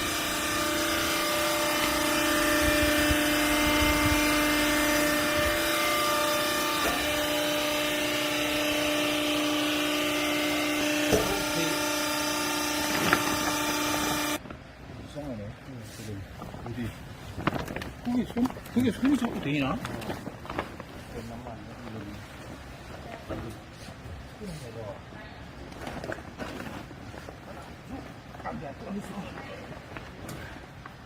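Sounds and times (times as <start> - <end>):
hydraulic power unit whining: 0.0 - 14.5.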